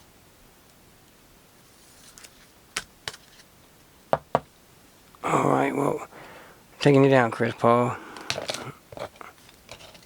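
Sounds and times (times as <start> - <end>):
cards rustling: 1.8 - 3.5, 8.1 - 10.0.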